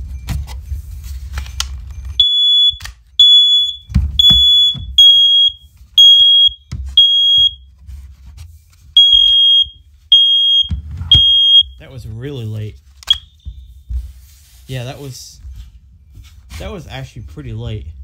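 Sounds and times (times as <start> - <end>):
smoke alarms beeping: 1.8 - 7.7, 9.0 - 11.9, 13.0 - 13.9.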